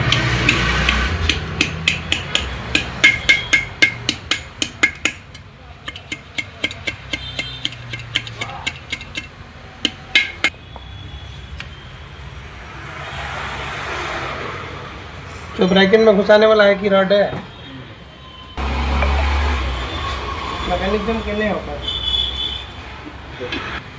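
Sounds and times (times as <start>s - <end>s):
metal-on-metal taps: 0.0s - 10.5s.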